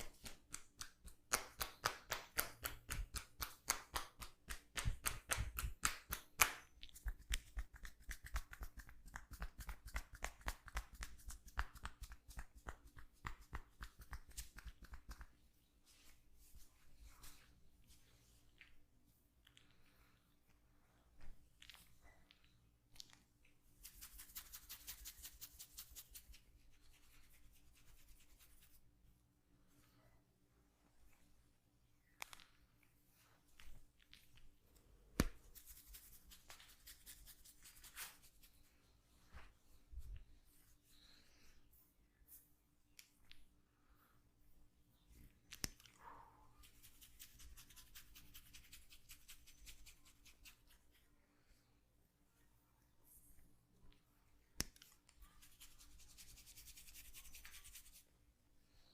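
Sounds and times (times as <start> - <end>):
hands patting skin: 0.0 - 18.8, 21.2 - 28.8, 33.5 - 40.6, 45.2 - 46.0, 46.6 - 51.0, 54.6 - 58.1.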